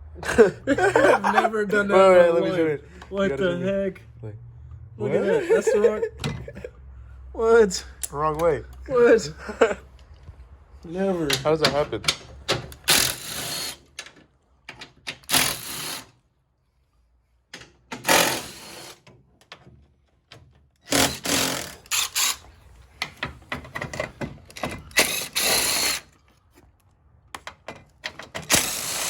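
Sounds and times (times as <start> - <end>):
power tool bursts: 12.8 - 14.0, 15.2 - 16.1, 18.0 - 19.0, 20.8 - 22.5, 24.8 - 26.1, 28.4 - 29.0.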